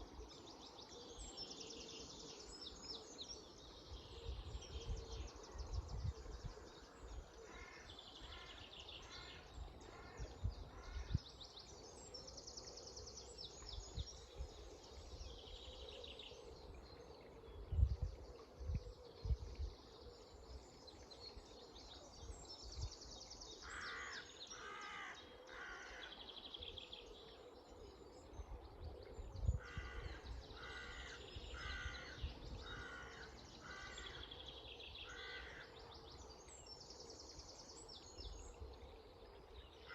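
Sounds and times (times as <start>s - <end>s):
crow cawing: 23.7s - 26.0s, 30.6s - 32.2s, 32.8s - 34.2s, 35.0s - 35.6s.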